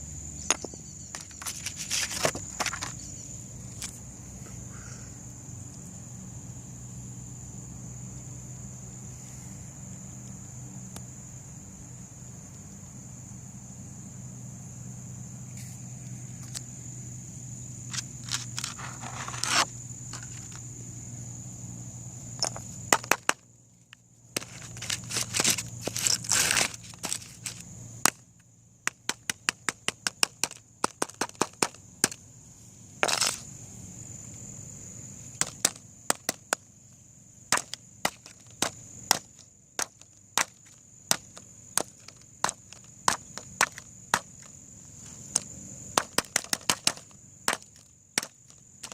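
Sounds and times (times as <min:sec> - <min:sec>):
cracks of card being smashed: 0:22.9 - 0:23.4, 0:35.4 - 0:36.6, 0:45.9 - 0:48.9.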